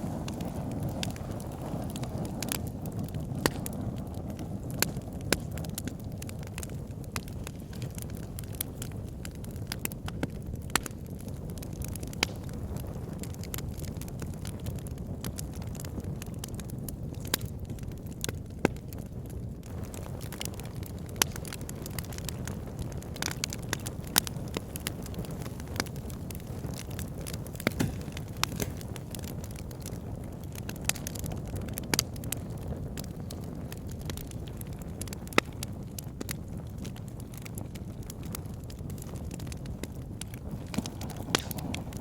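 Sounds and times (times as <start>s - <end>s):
crackles and pops of burning logs: 0.0s - 42.0s
low rumble of flames: 0.0s - 42.0s.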